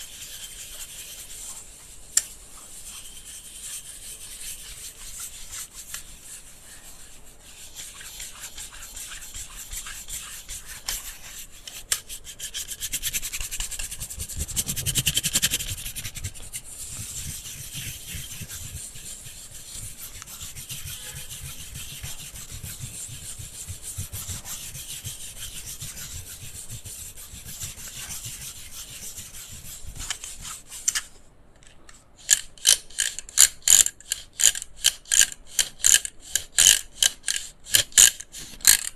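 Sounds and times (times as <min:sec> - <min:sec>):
scratchy rasping rub on electric fan: 0:00.0 - 0:31.1.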